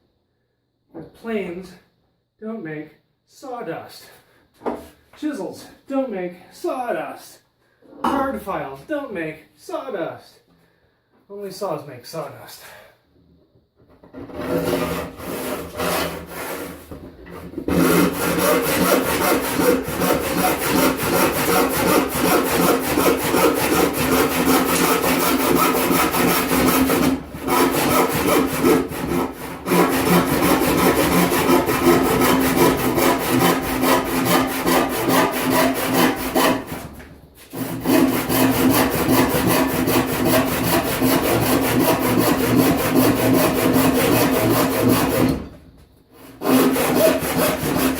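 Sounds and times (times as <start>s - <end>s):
hand saw rasping through wood: 14.2s - 45.5s, 46.2s - 47.9s.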